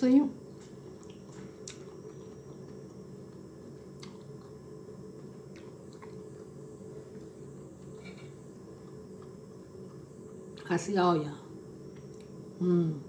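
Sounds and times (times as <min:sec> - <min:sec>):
low hum: 0:00.0 - 0:13.0
person chewing food: 0:00.5 - 0:10.6.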